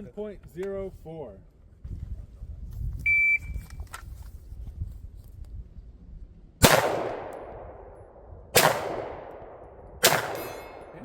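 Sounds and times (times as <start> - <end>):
pistol shots with echo: 6.6 - 11.0.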